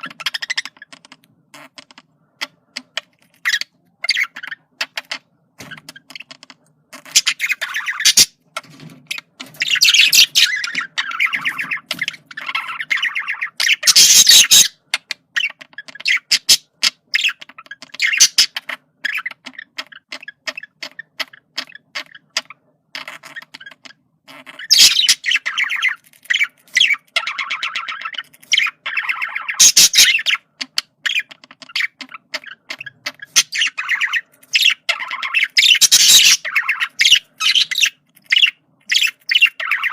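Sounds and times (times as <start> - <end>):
budgerigar chattering: 9.1 - 39.9
budgerigar squawks: 12.4 - 14.8.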